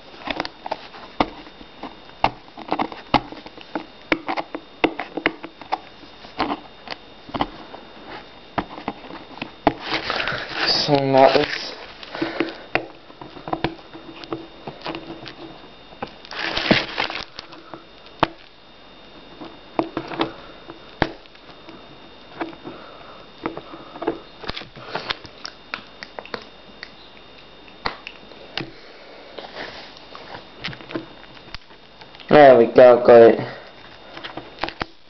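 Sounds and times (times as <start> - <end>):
plastic rustling: 7.3 - 18.6
plastic wrapping crinkling: 8.7 - 18.6.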